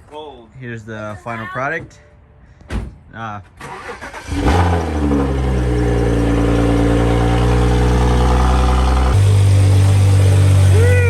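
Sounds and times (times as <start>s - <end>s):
car engine idling: 4.1s - 11.0s.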